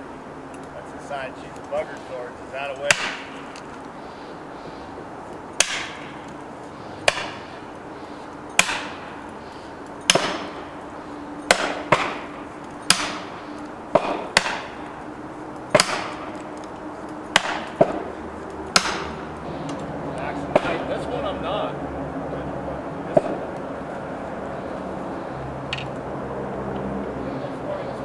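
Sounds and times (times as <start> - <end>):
hammer striking wedges: 2.8 - 3.5, 5.6 - 6.3, 7.0 - 7.6, 8.5 - 9.2, 10.0 - 10.7, 11.4 - 14.9, 15.7 - 16.5, 17.3 - 18.1, 18.7 - 19.3, 20.5 - 20.9.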